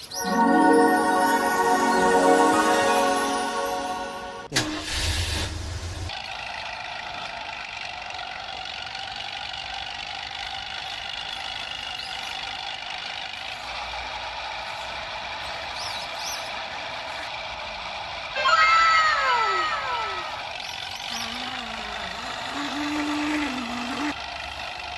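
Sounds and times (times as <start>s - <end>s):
vehicle motor droning: 19.9s - 24.9s.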